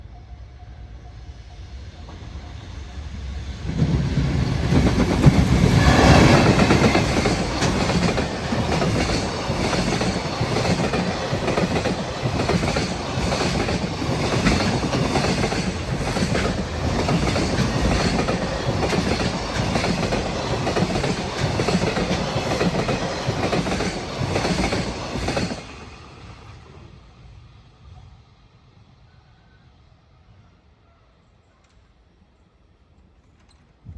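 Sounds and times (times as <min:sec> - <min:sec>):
locomotive passing: 0:01.5 - 0:27.4.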